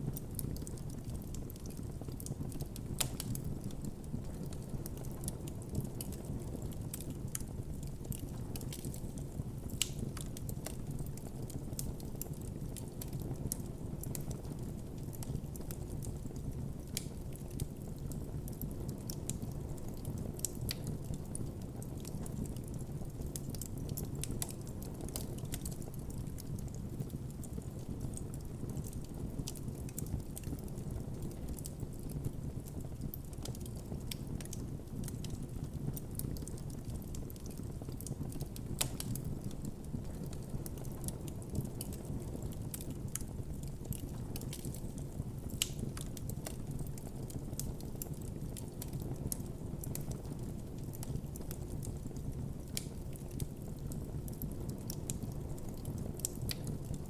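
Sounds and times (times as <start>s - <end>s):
campfire crackling and popping: 0.0s - 57.0s
low rumble of flames: 0.0s - 57.0s.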